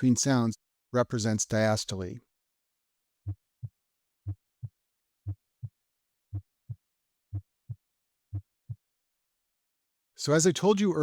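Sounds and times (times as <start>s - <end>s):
heartbeat thumps: 3.2s - 8.9s.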